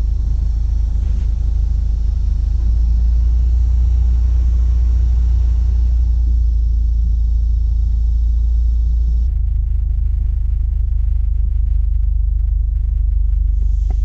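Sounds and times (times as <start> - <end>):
heater blower fan running: 0.0 - 8.2
steady low rumble: 0.0 - 14.0.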